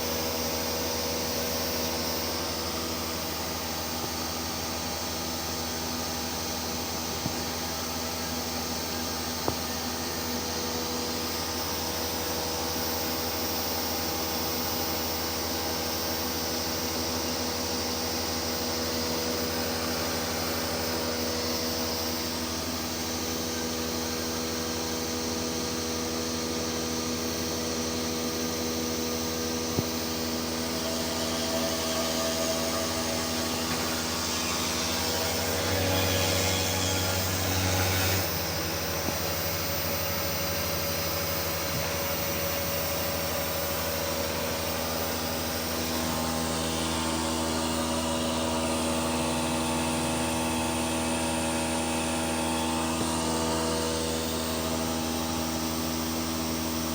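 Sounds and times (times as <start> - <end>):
machine mechanical hum: 0.0 - 56.9.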